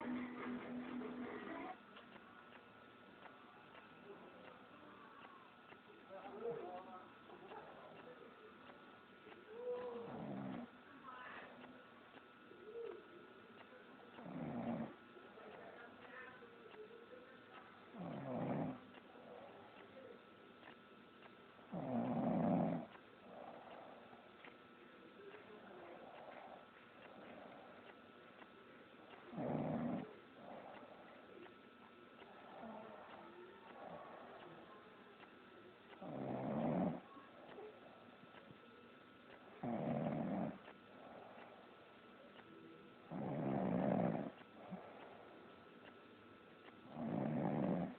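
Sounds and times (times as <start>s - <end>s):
quiet breathing: 0.0s - 47.9s
loud snoring: 10.0s - 10.7s, 14.2s - 15.0s, 18.0s - 18.8s, 21.7s - 24.0s, 29.3s - 31.0s, 36.0s - 37.1s, 39.6s - 41.3s, 43.1s - 44.9s, 46.8s - 47.9s
person snoring: 43.1s - 44.9s, 46.9s - 47.9s.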